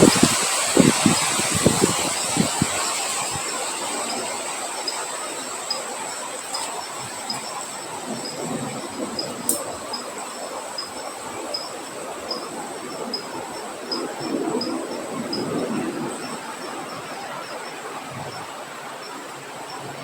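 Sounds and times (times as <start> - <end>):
high insect trill: 0.0 - 20.0
wind gusting: 0.0 - 20.0
faint regular chirps: 3.6 - 15.5.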